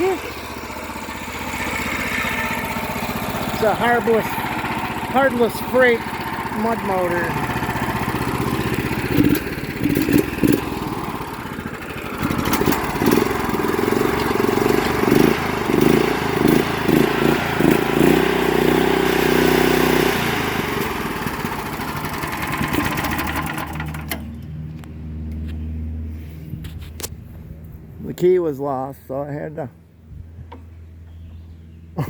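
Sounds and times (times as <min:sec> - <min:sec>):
small gas engine revving: 0:00.0 - 0:24.4.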